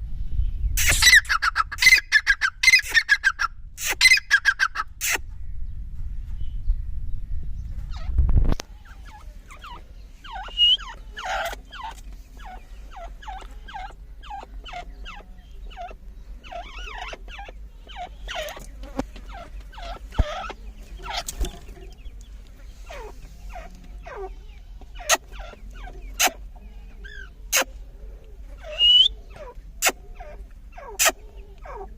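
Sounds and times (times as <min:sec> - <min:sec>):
partridges chirping: 0:00.8 - 0:31.9
loud low rumble: 0:05.2 - 0:10.2.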